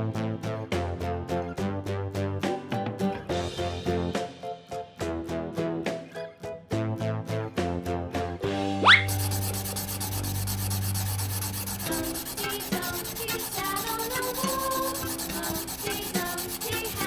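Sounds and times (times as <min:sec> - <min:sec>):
faint background music: 0:00.0 - 0:17.0
drawing tool scraping paper: 0:09.0 - 0:17.0.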